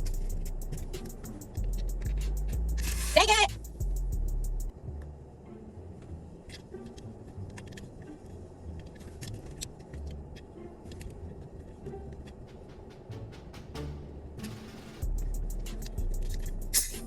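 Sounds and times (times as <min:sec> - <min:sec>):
small clicks and rustles: 0:06.4 - 0:12.4.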